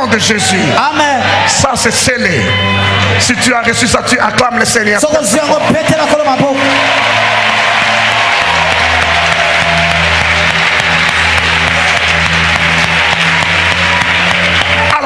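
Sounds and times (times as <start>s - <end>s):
congregation applauding and cheering: 0.0s - 15.0s
music: 0.0s - 15.0s.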